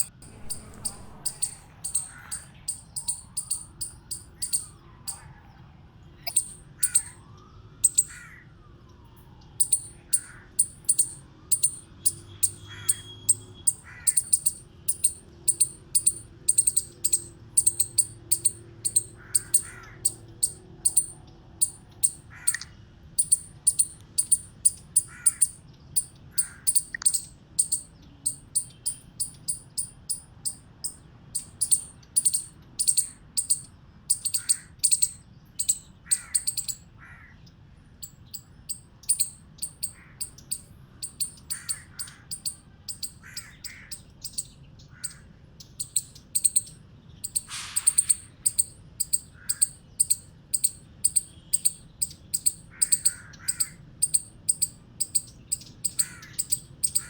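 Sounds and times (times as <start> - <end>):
low sliding calls: 0.0 - 5.2
chipmunk chipping: 0.0 - 5.4, 6.2 - 7.2, 7.8 - 8.4, 9.6 - 37.3, 38.0 - 57.0.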